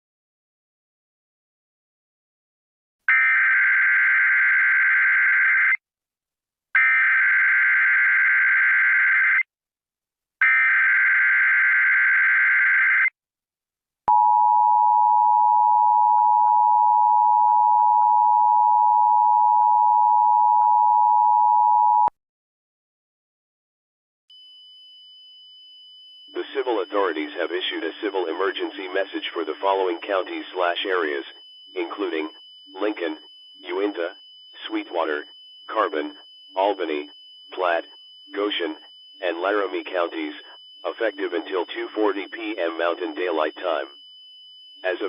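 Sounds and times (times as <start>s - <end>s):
harsh buzzing data tones: 24.4s - 45.0s.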